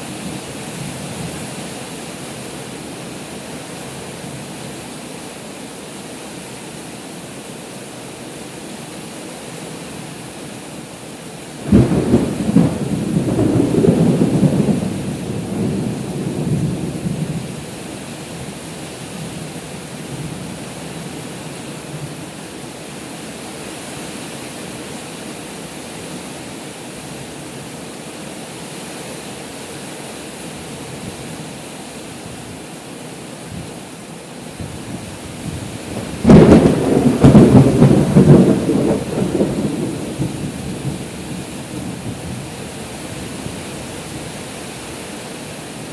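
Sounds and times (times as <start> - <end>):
heavy rain pouring: 0.0 - 45.9
thunder rumbling: 11.7 - 17.8, 34.6 - 43.6.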